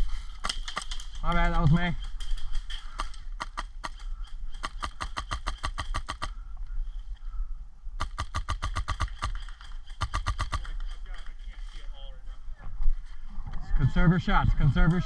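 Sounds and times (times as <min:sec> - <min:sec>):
airsoft rifle rapid fire: 0:03.0 - 0:06.3, 0:08.0 - 0:11.0.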